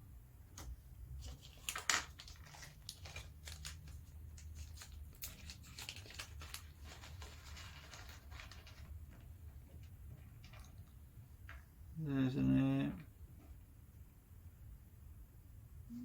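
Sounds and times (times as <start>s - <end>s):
plastic bags crinkling: 1.2s - 11.0s.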